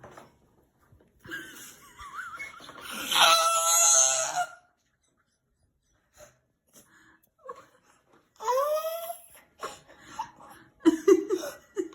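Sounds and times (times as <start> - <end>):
boy wailing high-pitched: 3.0 - 4.6.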